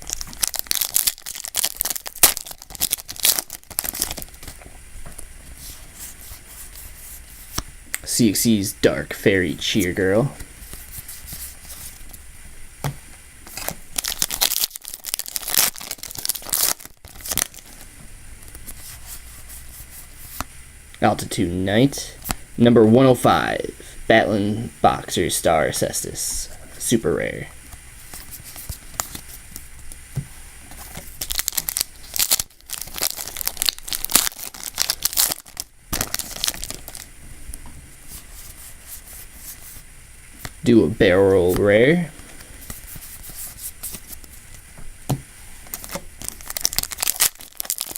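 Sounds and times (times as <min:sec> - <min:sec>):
foil pack tearing and crinkling: 0:00.0 - 0:04.6, 0:13.5 - 0:17.9, 0:30.8 - 0:37.1, 0:45.7 - 0:47.9.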